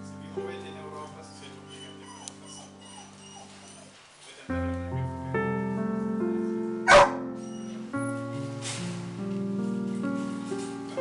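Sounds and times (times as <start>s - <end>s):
piano background music: 0.0s - 11.0s
puppy barking: 6.9s - 7.3s.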